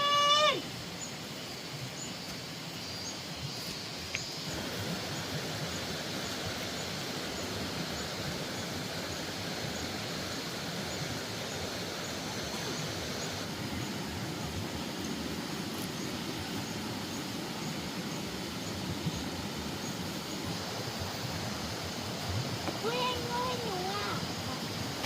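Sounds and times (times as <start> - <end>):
long held call: 0.0 - 0.6
steady hiss: 0.0 - 25.0.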